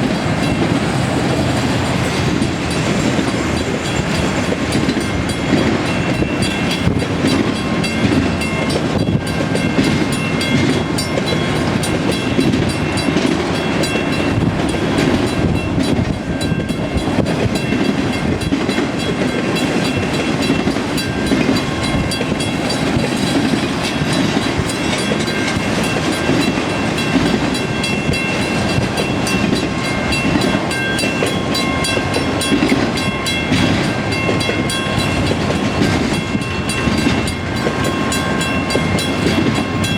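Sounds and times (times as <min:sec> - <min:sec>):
freight train rumbling past: 0:00.0 - 0:39.9.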